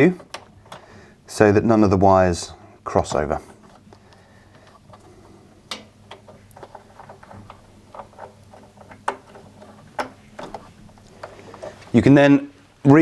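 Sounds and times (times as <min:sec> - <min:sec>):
electrical connectors clicking: 0:00.0 - 0:01.0, 0:03.0 - 0:12.2.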